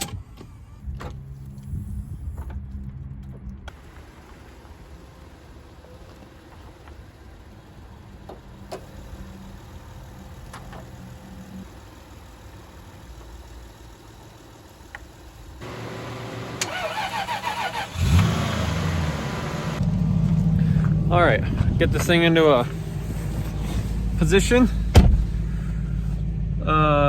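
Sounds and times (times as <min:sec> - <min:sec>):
car engine running: 0:00.6 - 0:27.0
car starter cranking engine: 0:15.5 - 0:19.8.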